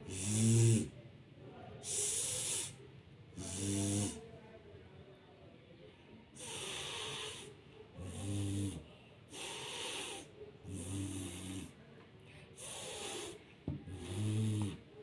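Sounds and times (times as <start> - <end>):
low buzzing snore: 0.0 - 1.0, 3.4 - 4.2, 6.4 - 11.8, 12.6 - 14.9
hissing breath: 1.8 - 2.8, 6.4 - 8.7, 9.3 - 11.7, 12.6 - 14.8.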